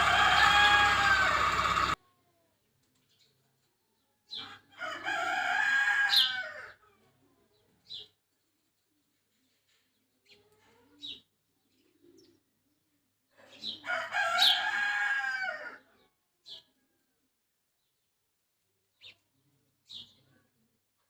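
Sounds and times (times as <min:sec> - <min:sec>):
rooster crowing: 0:00.0 - 0:02.0, 0:04.8 - 0:06.7, 0:13.8 - 0:15.8.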